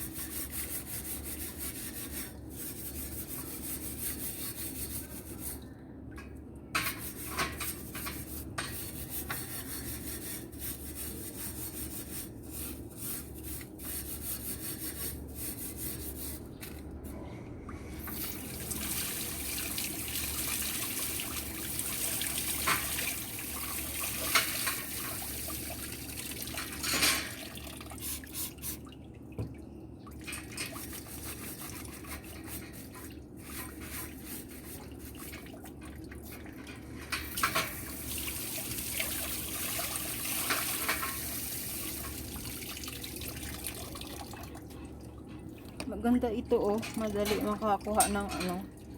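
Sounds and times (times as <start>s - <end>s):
grill grates being scrubbed: 0.0s - 5.6s, 6.8s - 16.8s, 21.3s - 25.7s, 30.4s - 35.4s, 37.0s - 42.3s
tap water running and splashing: 6.8s - 15.6s, 18.0s - 44.8s, 45.6s - 48.9s.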